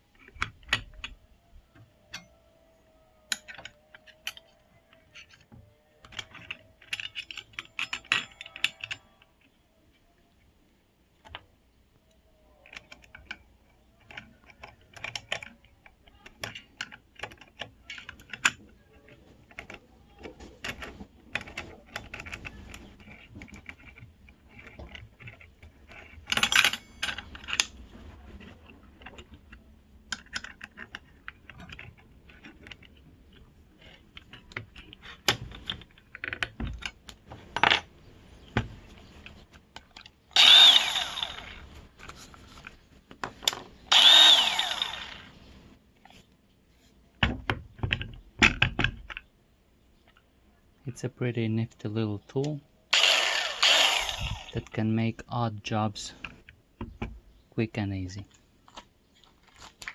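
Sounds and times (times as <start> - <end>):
small metal parts clicking and rattling: 0.0 - 10.5, 11.2 - 46.2, 53.0 - 54.8
saw motor starting: 40.3 - 41.8, 43.9 - 45.5, 52.9 - 54.7.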